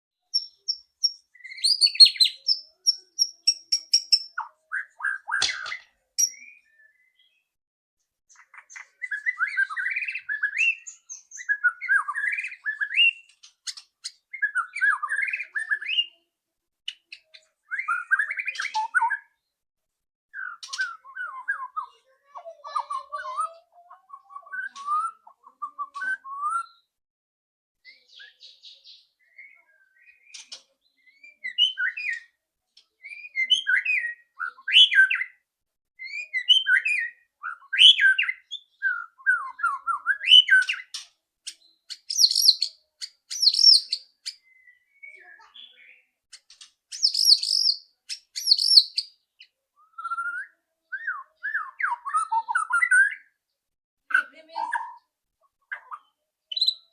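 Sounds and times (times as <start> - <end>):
bird singing whistles: 0.4 - 7.4, 9.0 - 13.3, 14.3 - 16.2, 17.7 - 19.3, 20.4 - 21.9, 24.1 - 26.9, 31.0 - 32.3, 33.0 - 35.4, 36.0 - 40.9, 41.9 - 46.0, 46.9 - 49.2, 49.8 - 53.4, 56.5 - 56.9.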